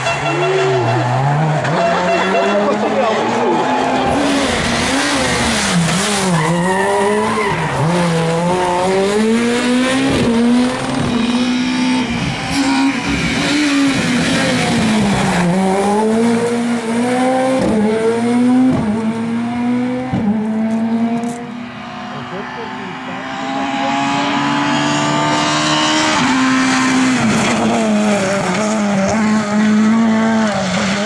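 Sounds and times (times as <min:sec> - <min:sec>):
rally car engine revving: 0:00.0 - 0:31.0.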